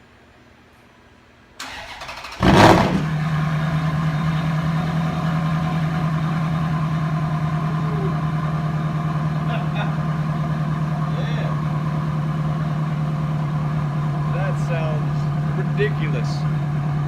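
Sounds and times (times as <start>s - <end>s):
starter motor cranking: 1.6s - 3.2s
loud car engine idling: 2.3s - 17.0s.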